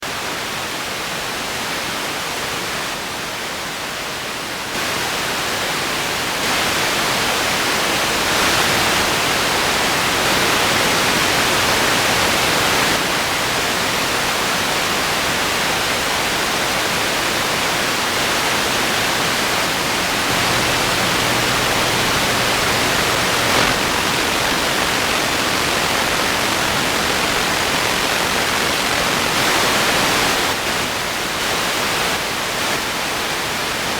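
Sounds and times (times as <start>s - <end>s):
television static hiss: 0.1s - 33.9s
faint low hum: 20.0s - 30.5s.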